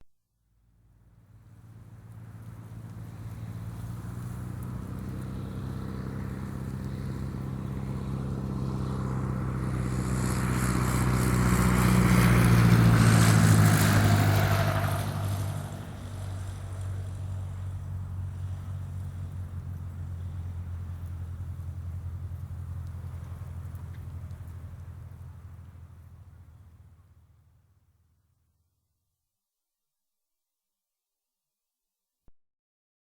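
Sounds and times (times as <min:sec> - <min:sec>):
airplane engine hum: 0:01.7 - 0:26.8.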